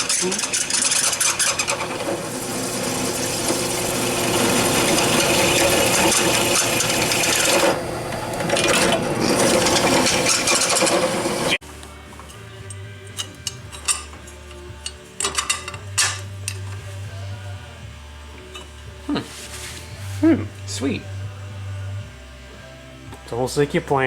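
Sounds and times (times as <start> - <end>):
electric drill boring metal: 0.0 - 11.6.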